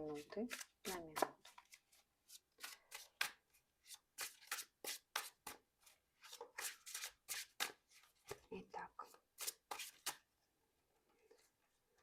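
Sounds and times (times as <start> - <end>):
cards being riffle shuffled: 0.5 - 5.6.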